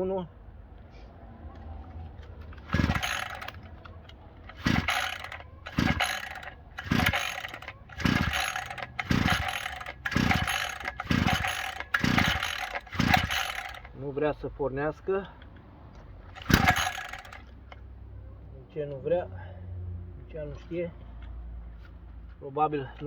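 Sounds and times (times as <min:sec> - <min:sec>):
recoil starter pulls whirring: 0:02.4 - 0:14.0, 0:16.2 - 0:17.8.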